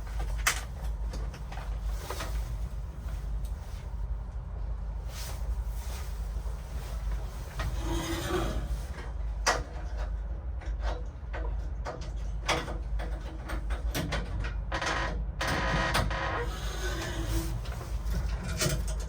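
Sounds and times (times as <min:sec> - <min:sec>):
steady low rumble: 0:00.0 - 0:10.7
scraping rub of tools: 0:05.3 - 0:09.2, 0:16.4 - 0:18.7.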